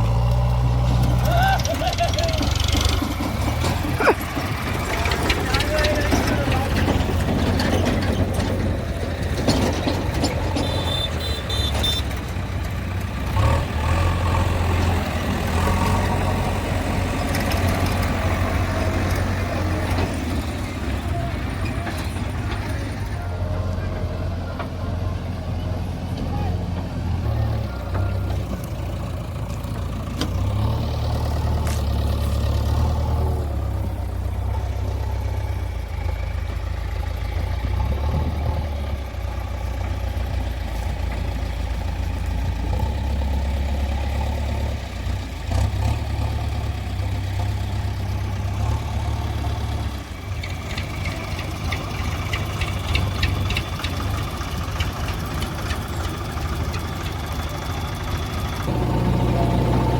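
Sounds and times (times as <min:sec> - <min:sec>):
diesel machinery drone: 0:00.0 - 0:59.9
rapid metallic clattering: 0:01.0 - 0:12.4.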